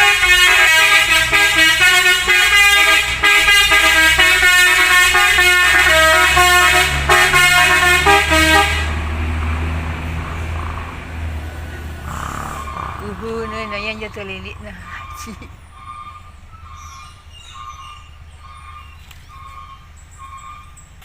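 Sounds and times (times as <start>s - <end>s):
musical air horn tune: 0.0s - 9.3s.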